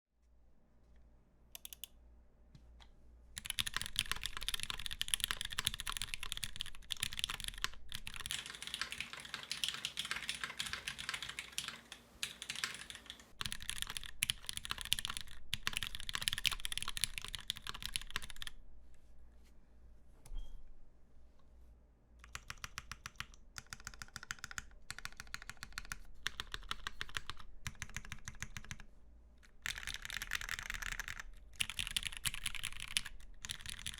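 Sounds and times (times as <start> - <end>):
typing on mechanical keyboard: 1.6 - 1.9, 3.4 - 18.6, 22.2 - 28.9, 29.5 - 33.9.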